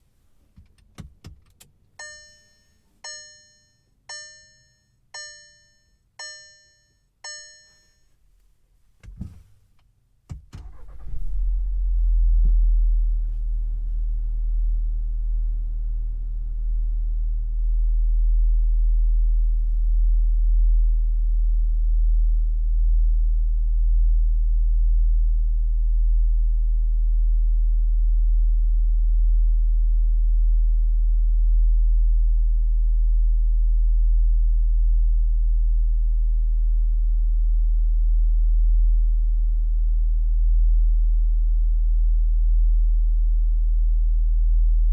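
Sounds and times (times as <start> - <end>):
dashboard warning chime: 2.0 - 8.1
car engine starting and idling: 10.3 - 24.1.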